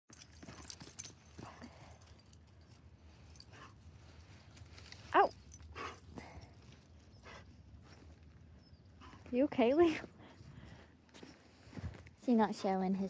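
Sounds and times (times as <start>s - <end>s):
dog whining: 5.1s - 5.9s.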